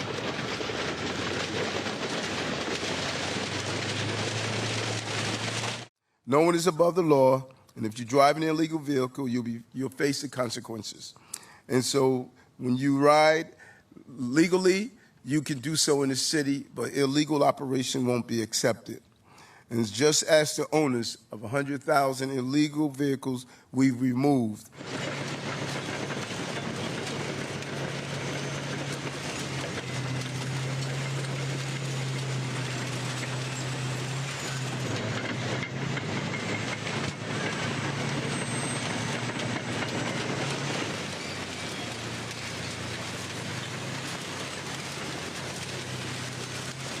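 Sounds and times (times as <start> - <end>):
diesel engine hum: 0.0 - 5.9, 24.8 - 47.0
metal crunching and clatter: 0.0 - 5.9, 24.8 - 47.0.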